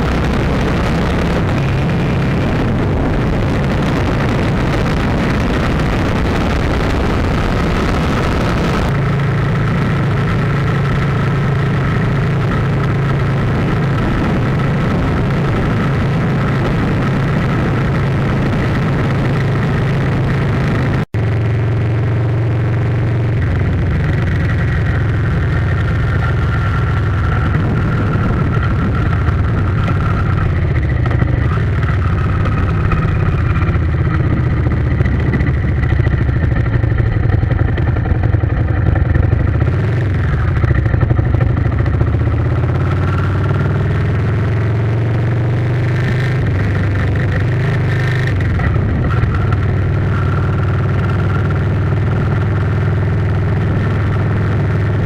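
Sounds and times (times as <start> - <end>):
vehicle engine running: 0.0 - 55.0.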